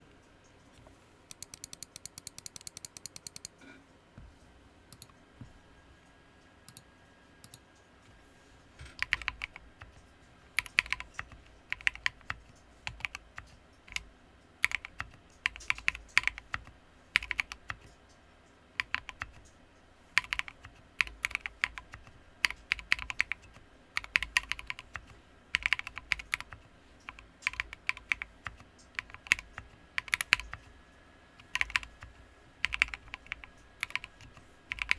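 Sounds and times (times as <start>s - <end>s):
mechanical keyboard typing: 1.3s - 3.6s, 8.8s - 18.1s, 18.8s - 30.8s, 31.4s - 34.9s.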